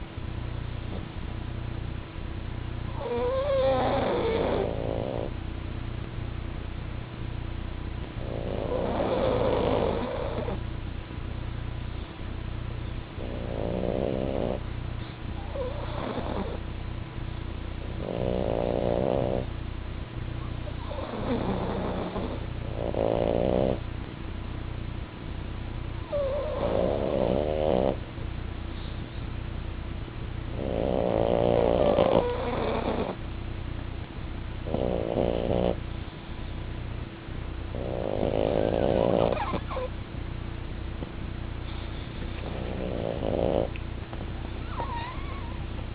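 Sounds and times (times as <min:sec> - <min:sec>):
steady low hum: 0:00.0 - 0:45.9
dogs snoring: 0:00.8 - 0:01.2, 0:02.8 - 0:05.4, 0:08.1 - 0:10.7, 0:13.1 - 0:16.8, 0:17.8 - 0:19.6, 0:20.4 - 0:23.9, 0:26.0 - 0:28.1, 0:28.7 - 0:29.3, 0:30.5 - 0:33.3, 0:34.6 - 0:36.8, 0:37.6 - 0:40.0, 0:41.0 - 0:45.9
soft snuffling breaths: 0:20.6 - 0:23.8, 0:26.1 - 0:29.4, 0:30.5 - 0:33.2, 0:34.6 - 0:36.7, 0:37.7 - 0:40.0, 0:41.6 - 0:45.8.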